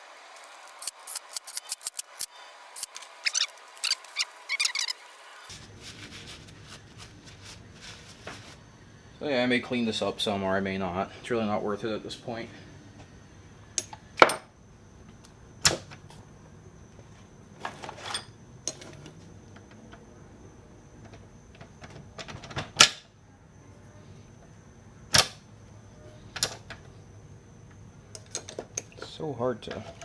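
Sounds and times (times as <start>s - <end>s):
tools and metal parts clicking: 0.8s - 4.9s.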